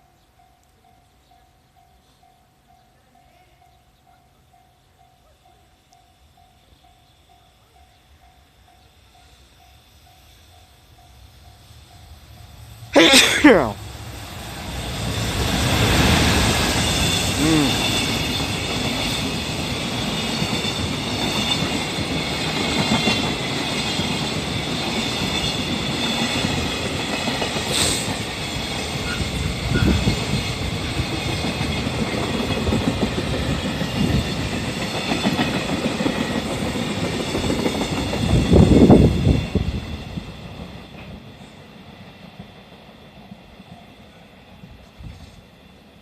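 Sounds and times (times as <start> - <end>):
freight train rumbling: 0.4 - 46.0
wheels clickety-clack: 14.8 - 41.4.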